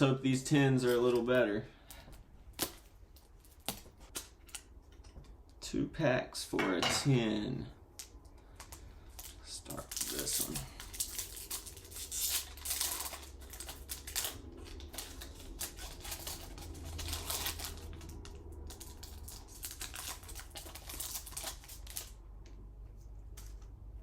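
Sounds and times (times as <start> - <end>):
foil wrapper crackling: 0.8 - 5.1, 8.0 - 22.2.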